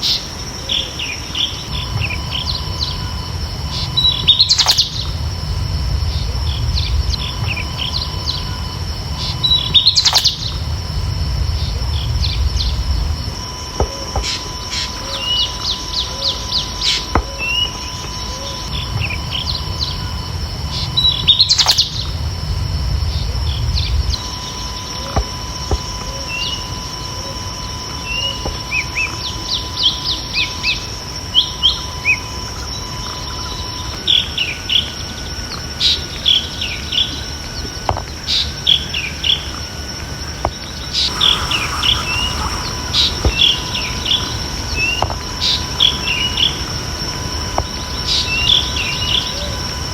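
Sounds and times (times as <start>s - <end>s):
small birds chirping: 0.0s - 11.0s, 14.2s - 22.2s, 40.5s - 46.6s
high insect trill: 0.0s - 49.9s.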